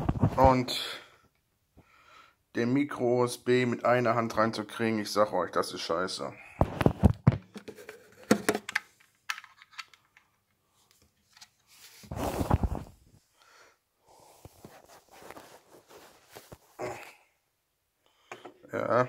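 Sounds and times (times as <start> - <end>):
plastic clicks and knocks: 6.6 - 10.4
scraping rustle: 11.4 - 13.0.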